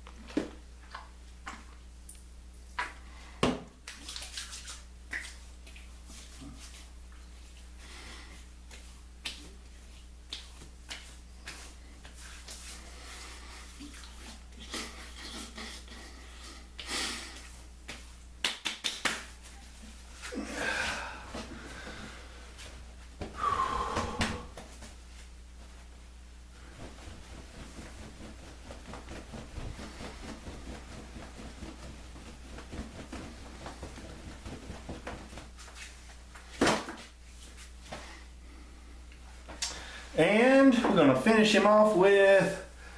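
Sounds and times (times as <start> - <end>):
person breathing: 7.8 - 8.5, 20.3 - 22.6, 23.3 - 24.6, 37.9 - 40.2
slaps on skin: 17.9 - 19.3.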